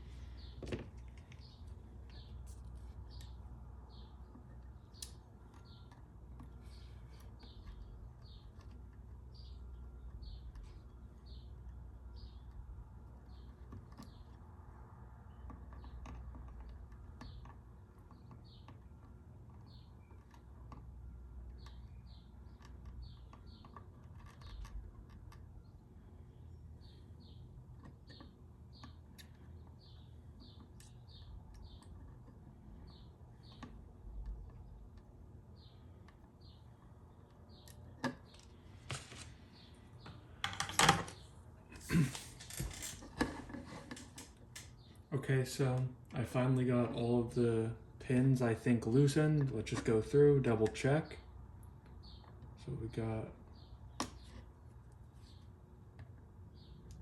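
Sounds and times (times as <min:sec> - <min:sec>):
low steady hum: 0:00.0 - 0:57.0.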